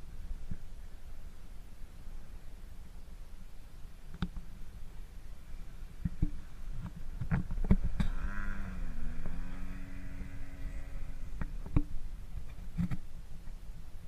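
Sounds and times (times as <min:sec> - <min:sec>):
model airplane motor droning: 0:07.7 - 0:11.8.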